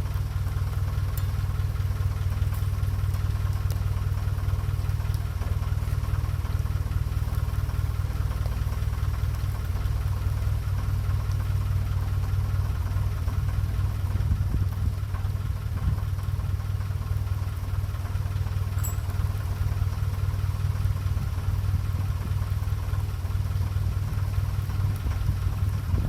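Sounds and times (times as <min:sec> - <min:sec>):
diesel engine running at low revs: 0:00.0 - 0:26.0.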